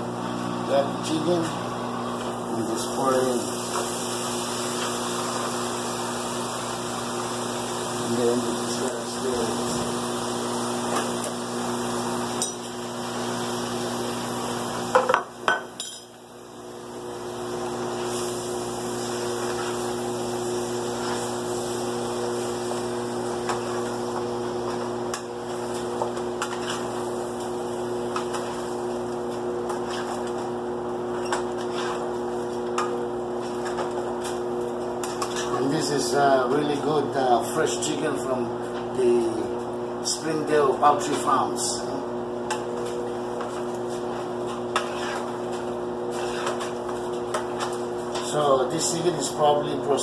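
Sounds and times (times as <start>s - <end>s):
steady hum and hiss: 0.6s - 50.0s
spoon stirring in a cooking pot: 29.3s - 30.5s, 31.1s - 35.6s, 42.5s - 48.2s.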